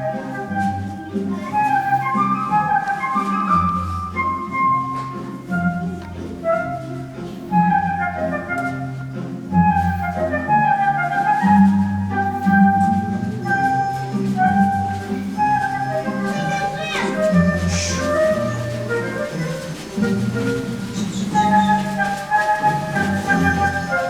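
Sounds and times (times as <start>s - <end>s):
flute-like melody: 0.0s - 24.0s.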